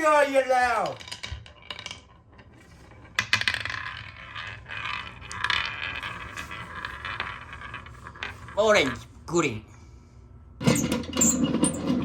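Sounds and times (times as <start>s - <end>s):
marbles rolling down wooden run: 0.7s - 9.1s.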